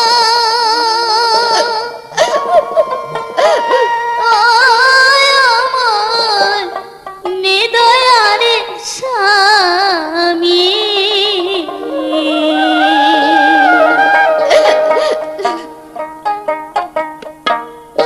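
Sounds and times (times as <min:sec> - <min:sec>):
musical accompaniment: 0:00.8 - 0:07.8, 0:10.8 - 0:18.0
high voice singing with vibrato: 0:03.6 - 0:15.0.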